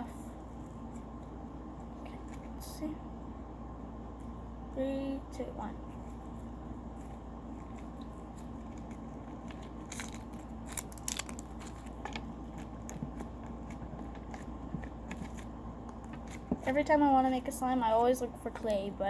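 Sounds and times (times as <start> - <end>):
steady background hum: 0.0 - 19.0
slime crackling when kneaded: 9.8 - 16.5.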